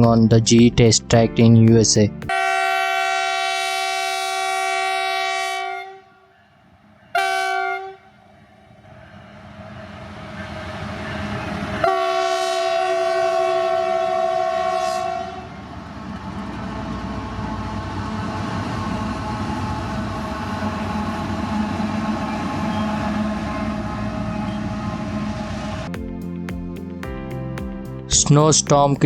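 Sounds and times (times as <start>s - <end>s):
locomotive horn chord: 2.3s - 6.1s, 7.1s - 8.2s, 10.3s - 15.7s, 19.0s - 25.9s
diesel locomotive engine running: 8.2s - 25.9s.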